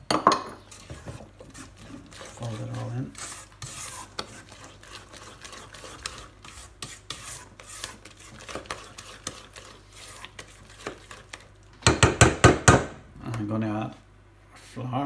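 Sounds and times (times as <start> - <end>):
spatula scraping batter in bowl: 0.6 - 11.6.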